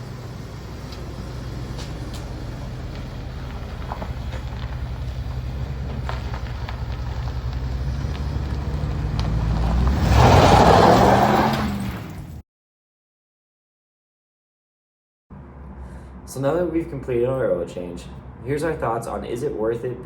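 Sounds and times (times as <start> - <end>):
car engine humming: 0.0 - 12.4.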